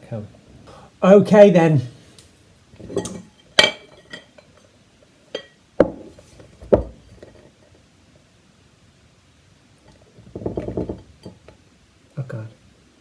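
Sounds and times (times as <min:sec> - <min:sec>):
pie dish clinking: 0:02.8 - 0:04.7, 0:05.3 - 0:07.4
pie dish knocking: 0:05.4 - 0:07.0, 0:10.2 - 0:11.4.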